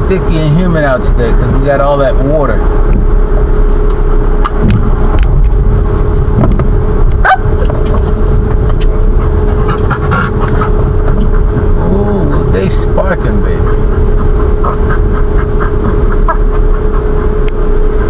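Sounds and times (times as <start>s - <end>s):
road rumble inside car: 0.0s - 18.0s.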